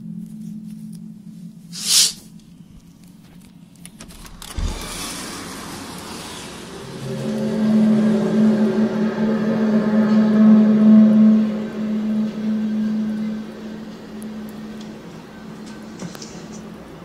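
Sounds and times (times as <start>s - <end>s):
low droning hum: 0.0s - 17.0s
loud hiss: 1.7s - 2.3s
rising rushing noise: 4.4s - 15.6s.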